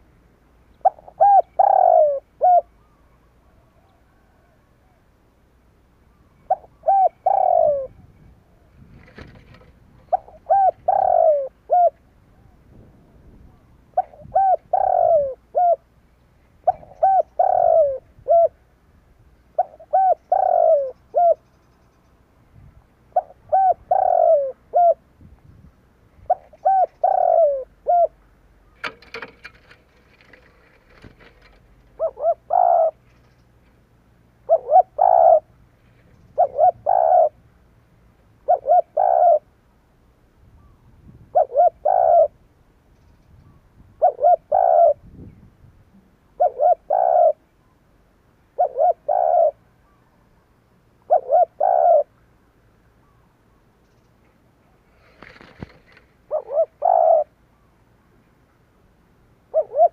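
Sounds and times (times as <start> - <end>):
dove cooing: 0.8 - 5.1, 6.4 - 12.6, 13.5 - 15.9, 16.6 - 18.6, 19.5 - 21.5, 23.1 - 25.1, 26.2 - 28.2, 28.8 - 33.4, 34.4 - 35.6, 36.2 - 37.4, 38.4 - 39.5, 40.6 - 42.4, 44.0 - 45.1, 46.3 - 47.5, 48.5 - 49.6, 51.0 - 52.1, 54.9 - 57.4, 59.5 - 59.9.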